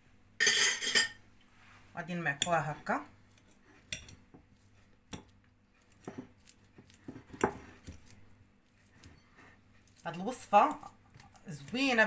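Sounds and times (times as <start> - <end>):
fork mashing banana: 3.3 - 12.0.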